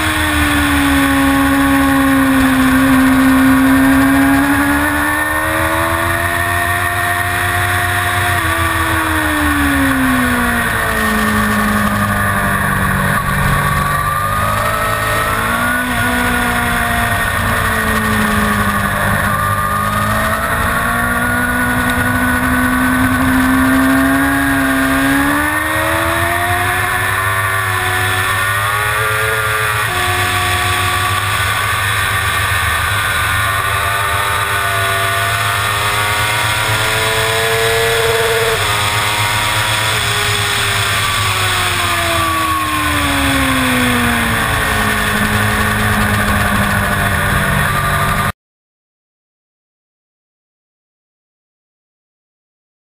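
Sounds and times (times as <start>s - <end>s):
motorcycle engine revving: 0.0s - 48.3s.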